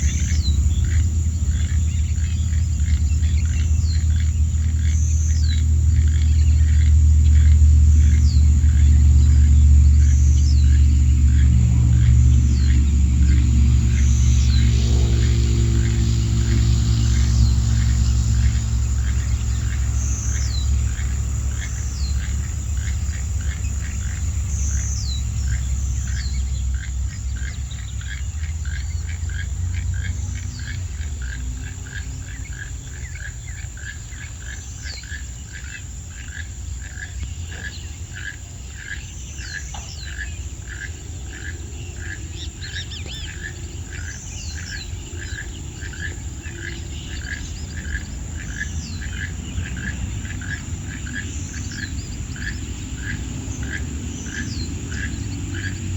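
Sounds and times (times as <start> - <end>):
low rumble: 0.0 - 35.4.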